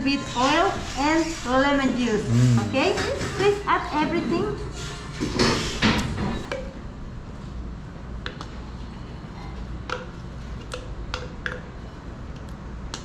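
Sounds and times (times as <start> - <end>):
low steady hum: 2.0 - 3.2.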